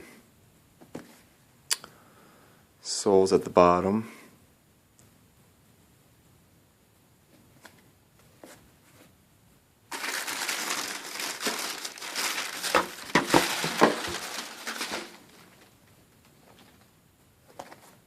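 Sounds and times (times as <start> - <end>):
wrapping crinkling and rustling: 9.9 - 16.9.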